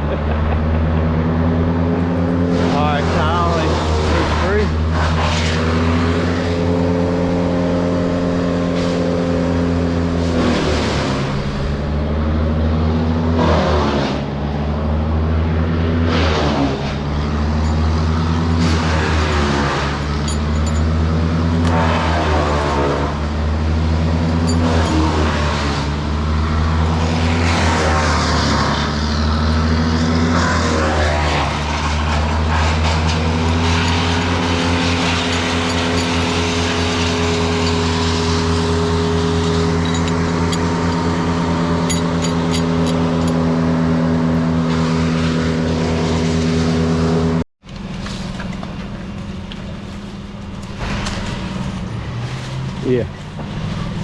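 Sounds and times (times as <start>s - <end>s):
large diesel engine running: 0.0s - 54.0s.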